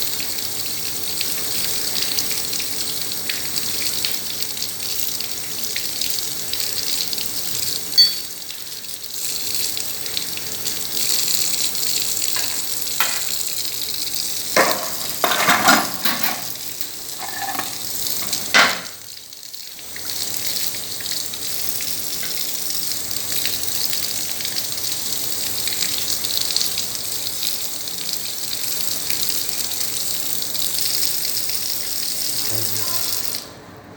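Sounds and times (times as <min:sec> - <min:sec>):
water running from a tap: 0:00.0 - 0:33.6
knocks and clatters of handling: 0:12.3 - 0:13.4, 0:14.6 - 0:18.9.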